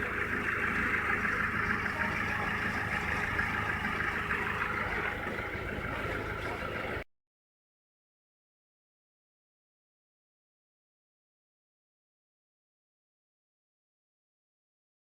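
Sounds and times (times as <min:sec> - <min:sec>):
car engine idling: 0:00.0 - 0:07.0.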